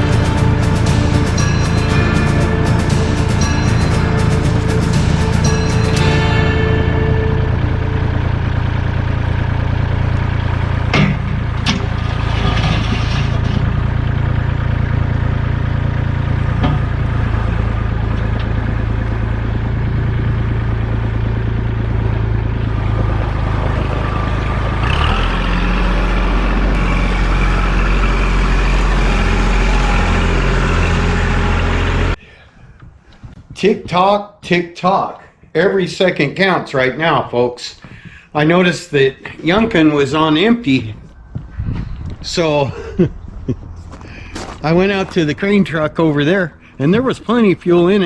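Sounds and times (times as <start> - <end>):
engine running: 0.0 - 32.2, 37.8 - 48.0
sharp knocks: 10.9 - 12.0.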